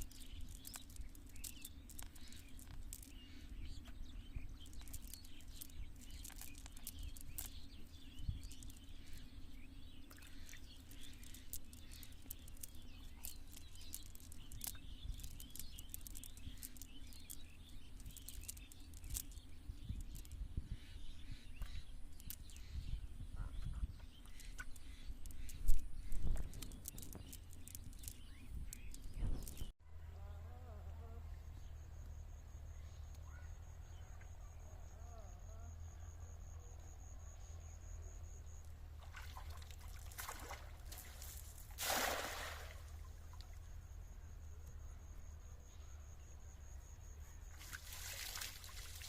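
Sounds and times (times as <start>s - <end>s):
water trickling and splashing: 0.0s - 20.4s, 38.9s - 43.8s, 47.5s - 49.0s
small birds chirping: 0.0s - 49.0s.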